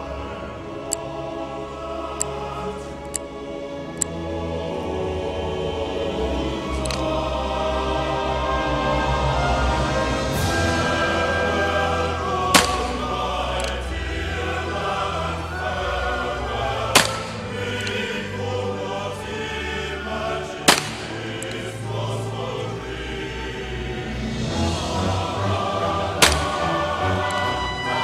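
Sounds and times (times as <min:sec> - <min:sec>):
choral music: 0:00.0 - 0:28.0
revolver shots: 0:12.5 - 0:13.1.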